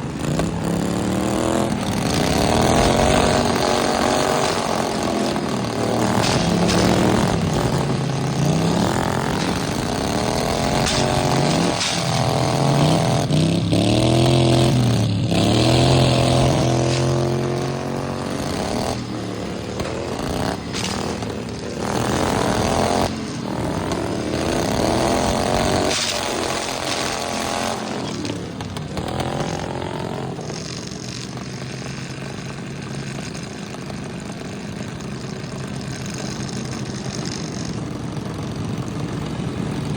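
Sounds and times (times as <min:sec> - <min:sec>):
riding mower engines revving: 0:00.0 - 0:39.9.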